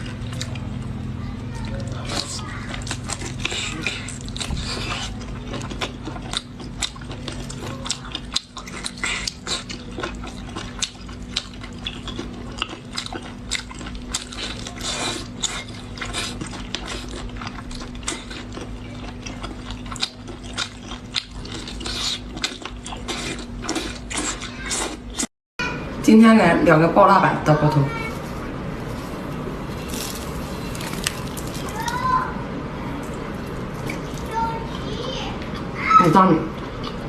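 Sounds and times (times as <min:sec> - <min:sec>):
wet biting and chewing: 0:01.6 - 0:25.3, 0:29.8 - 0:32.1.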